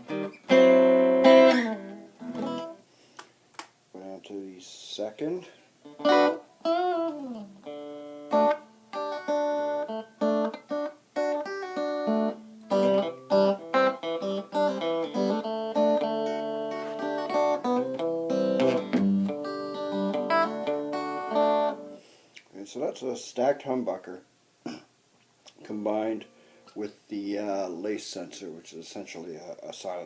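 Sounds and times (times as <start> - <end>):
clean electric guitar notes and chords: 0.0 - 2.8, 5.8 - 22.0.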